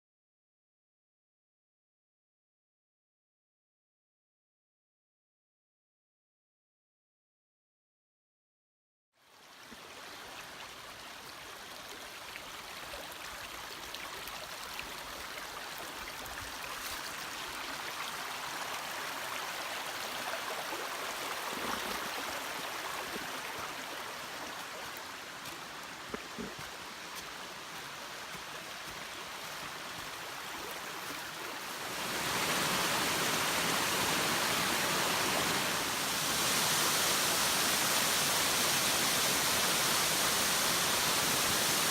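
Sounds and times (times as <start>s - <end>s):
waterfall rushing: 15.9s - 41.9s.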